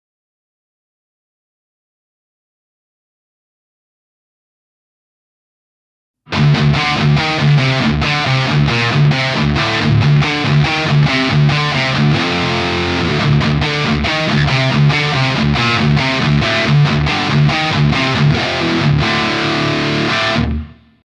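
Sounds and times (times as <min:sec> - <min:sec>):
distorted electric guitar riff: 0:06.3 - 0:21.0.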